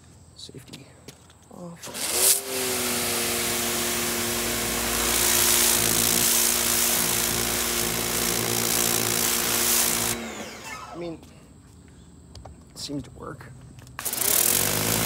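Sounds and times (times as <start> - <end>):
pressure washer motor hum: 1.8 - 11.2, 14.0 - 15.0.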